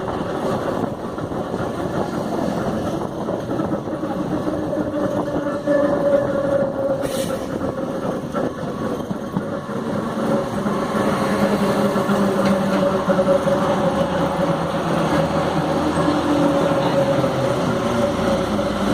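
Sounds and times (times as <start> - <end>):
electric train whine and rumble: 0.0 - 18.9.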